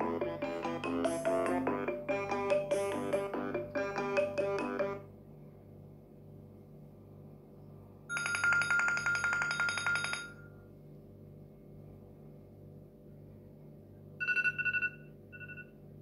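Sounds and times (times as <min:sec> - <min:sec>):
melodic phone ringtone: 0:00.0 - 0:05.0, 0:08.1 - 0:10.5, 0:14.2 - 0:15.7
steady low hum: 0:00.0 - 0:08.1.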